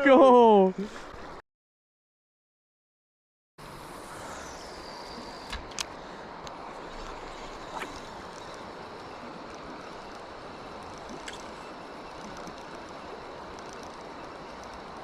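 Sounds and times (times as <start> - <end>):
river water flowing: 3.6 - 15.0
faint clicks: 5.4 - 15.0.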